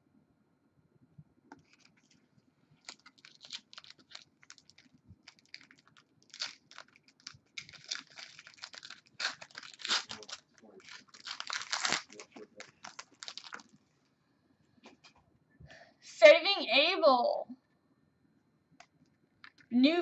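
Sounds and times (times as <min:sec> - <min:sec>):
trading cards rustling and clicking: 0:02.8 - 0:13.7.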